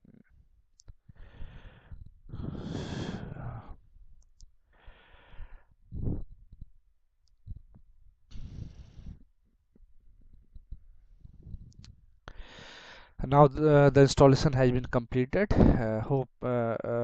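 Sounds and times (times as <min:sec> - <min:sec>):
faint clicks: 0:00.8 - 0:01.2
person breathing close to microphone: 0:01.0 - 0:03.9, 0:04.6 - 0:06.6, 0:08.3 - 0:09.4, 0:11.1 - 0:13.2.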